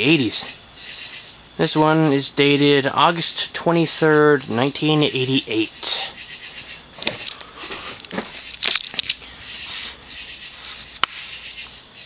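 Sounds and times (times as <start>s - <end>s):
faint rustling: 6.4s - 11.5s.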